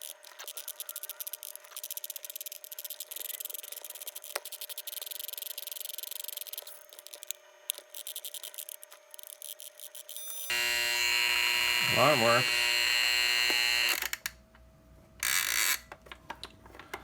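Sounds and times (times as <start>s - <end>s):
clock hum: 10.5s - 14.2s.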